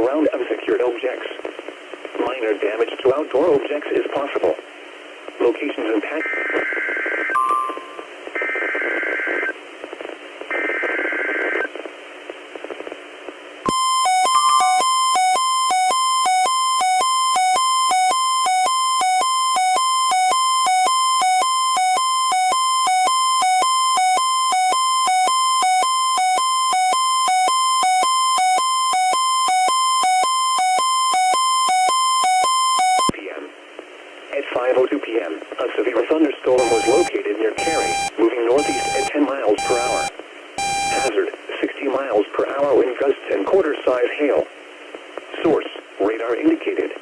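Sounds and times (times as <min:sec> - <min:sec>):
electronic alarm tone: 0:07.3 - 0:08.1, 0:13.7 - 0:33.1, 0:36.6 - 0:41.1
electronic data bursts: 0:13.7 - 0:17.6, 0:36.6 - 0:41.2.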